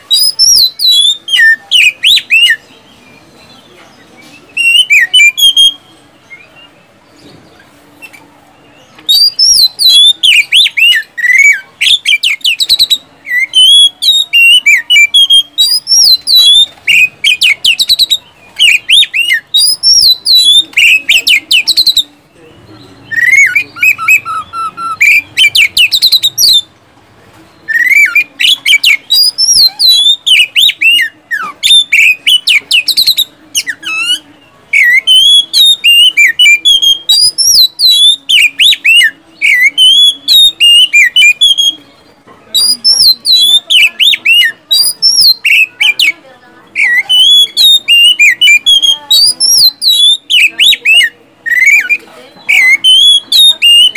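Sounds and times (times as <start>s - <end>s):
bird singing sharp whistles: 4.5s - 6.5s, 23.0s - 26.7s, 46.8s - 53.9s.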